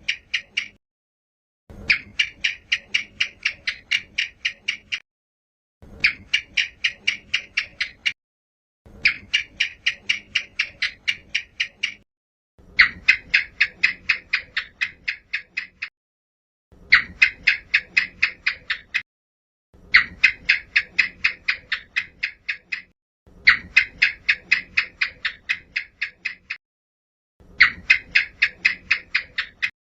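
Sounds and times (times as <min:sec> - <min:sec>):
gecko chirping rapidly: 0:01.9 - 0:05.0, 0:09.0 - 0:12.0, 0:12.8 - 0:15.9, 0:16.9 - 0:19.0, 0:19.9 - 0:26.6, 0:27.6 - 0:29.7.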